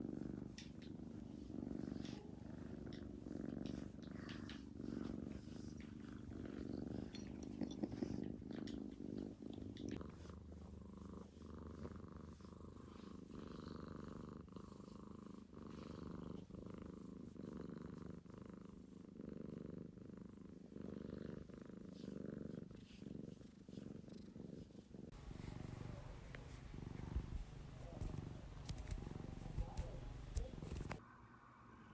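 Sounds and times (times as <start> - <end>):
cat purring: 0.0 - 31.0.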